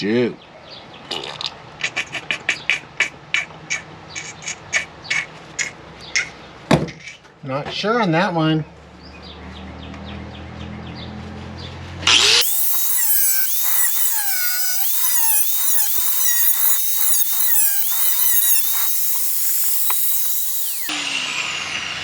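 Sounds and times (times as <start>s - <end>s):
power grinder grinding steel: 12.1s - 22.0s.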